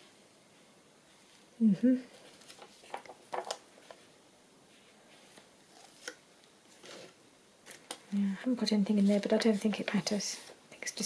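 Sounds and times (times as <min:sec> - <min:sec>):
paper rustling and tapping: 0:02.3 - 0:04.0.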